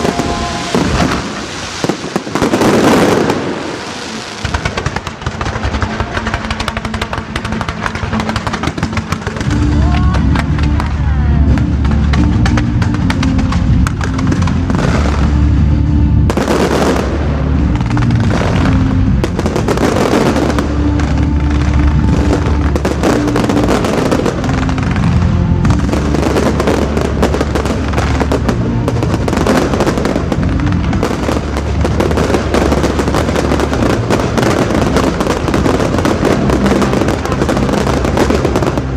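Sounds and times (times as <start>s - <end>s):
fireworks bursting and crackling: 0.0s - 38.9s
loud music with heavy bass: 9.4s - 38.9s.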